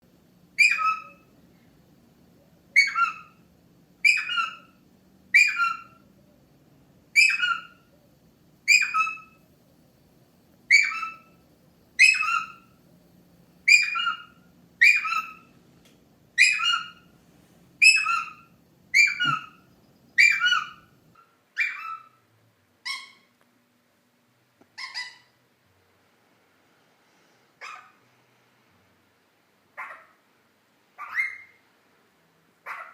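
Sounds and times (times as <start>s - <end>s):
parakeet whistled call: 0.6s - 1.3s, 2.8s - 3.4s, 4.0s - 4.8s, 5.4s - 6.0s, 7.2s - 7.9s, 8.7s - 9.4s, 10.7s - 11.4s, 12.0s - 12.6s, 13.7s - 15.5s, 16.4s - 17.1s, 17.8s - 19.6s, 20.2s - 20.9s.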